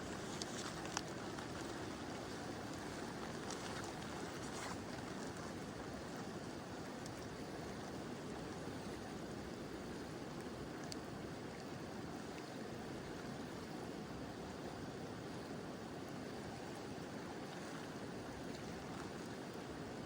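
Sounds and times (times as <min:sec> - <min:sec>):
faint ticks: 0:00.0 - 0:05.8, 0:06.9 - 0:07.4, 0:10.4 - 0:11.7.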